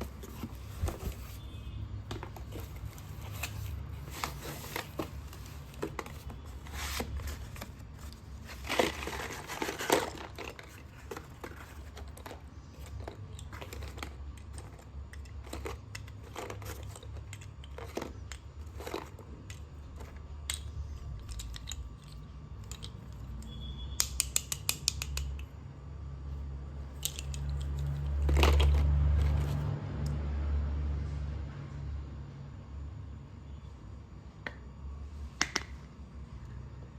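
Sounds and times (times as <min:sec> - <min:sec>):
slate pencils clicking and crunching: 0:00.0 - 0:25.5, 0:26.9 - 0:29.6.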